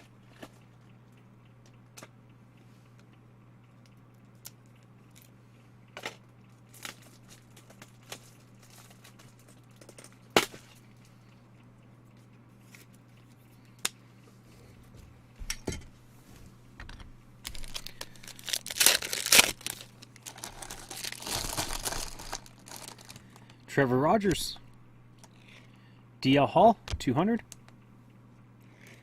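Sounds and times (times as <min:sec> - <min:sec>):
plastic wrapper tearing and crinkling: 0:17.4 - 0:23.3.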